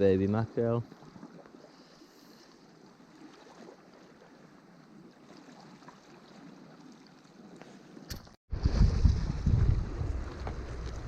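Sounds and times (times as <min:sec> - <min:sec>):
shoreline water washing: 0:00.0 - 0:11.0
wind buffeting microphone: 0:08.5 - 0:11.0.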